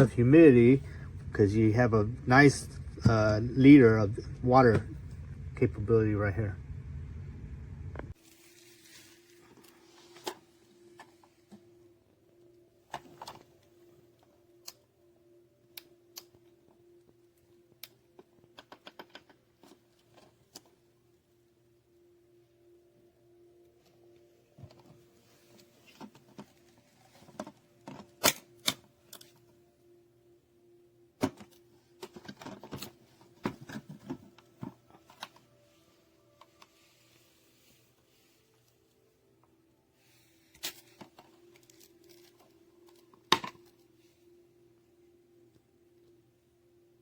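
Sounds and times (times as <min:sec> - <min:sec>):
faint steady hum: 0:00.0 - 0:47.0
clicks and knocks of handling: 0:17.8 - 0:20.7.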